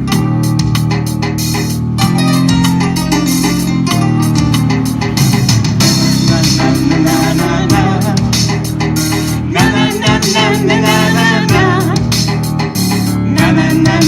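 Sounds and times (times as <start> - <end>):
bass line: 0.0 - 14.0
keyboard: 0.0 - 14.0
live band music: 0.0 - 14.0
wavering melody line: 1.7 - 12.0.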